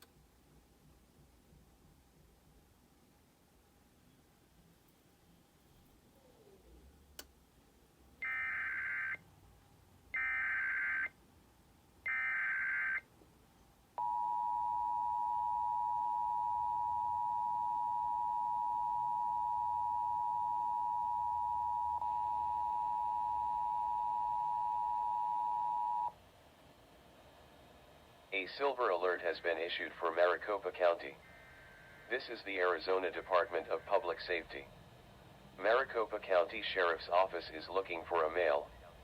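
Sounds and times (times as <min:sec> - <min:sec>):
two-tone alarm: 0:08.2 - 0:09.2, 0:10.2 - 0:11.2, 0:12.0 - 0:13.1, 0:14.0 - 0:26.2.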